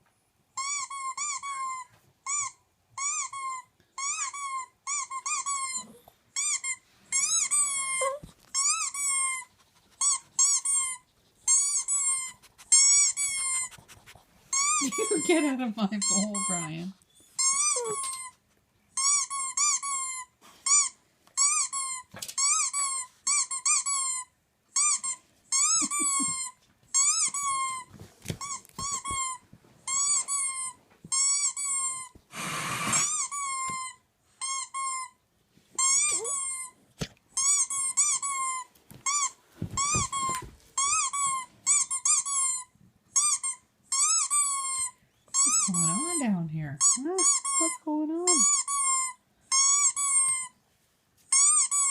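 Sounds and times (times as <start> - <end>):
squeaky dog toy squeaks: 0.5 - 32.2, 32.9 - 35.2, 35.8 - 50.6, 51.3 - 51.9
burst of hiss-like noise: 32.3 - 33.1.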